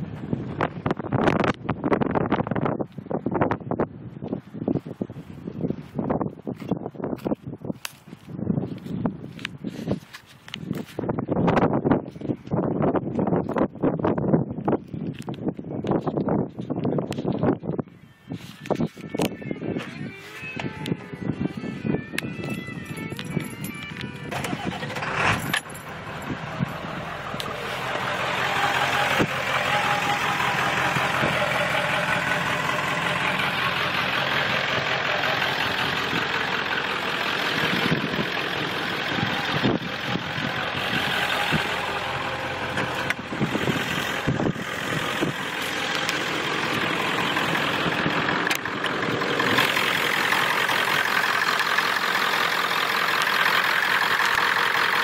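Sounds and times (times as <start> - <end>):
diesel engine running: 0.0 - 7.6, 18.2 - 55.0
turbocharger whistling: 19.0 - 55.0.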